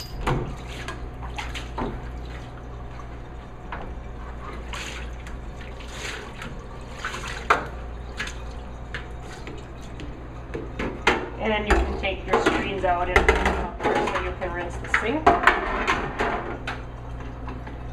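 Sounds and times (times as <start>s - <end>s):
water splashing and dripping: 4.6s - 10.1s.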